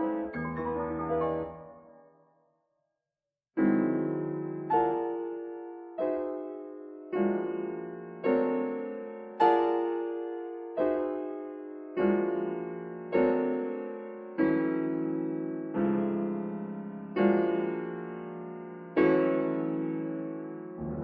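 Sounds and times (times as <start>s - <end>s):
piano chords: 0.0s - 2.4s, 3.6s - 21.0s.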